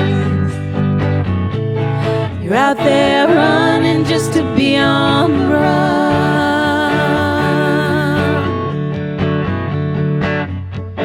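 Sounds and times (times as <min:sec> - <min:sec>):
country band music: 0:00.0 - 0:10.4.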